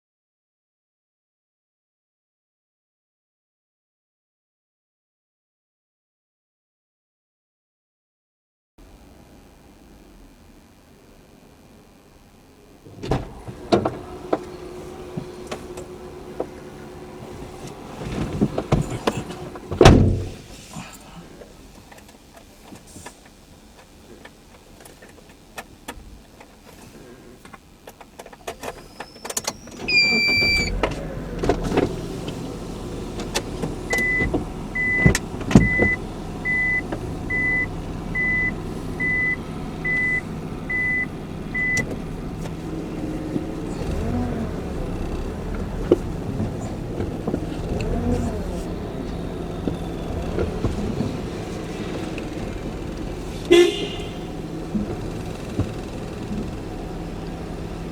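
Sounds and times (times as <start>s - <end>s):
car engine starting and idling: 12.8s - 27.1s, 27.9s - 57.9s
car door clunking: 12.9s - 20.5s, 28.6s - 36.2s, 39.9s - 57.1s
warning beeps: 29.0s - 30.8s, 33.9s - 41.9s.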